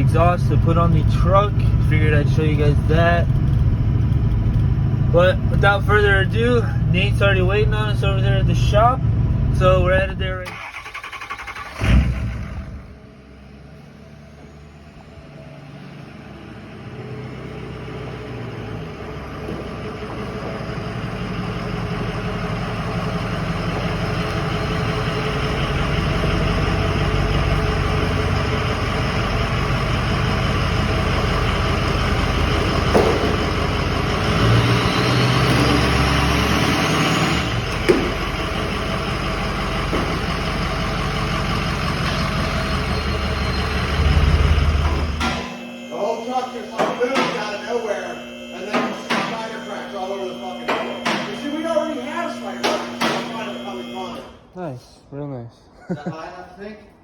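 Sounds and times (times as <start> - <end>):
diesel truck engine running: 0.0 - 54.5
sharp knocks: 32.9 - 33.5, 50.7 - 51.4, 52.6 - 53.4.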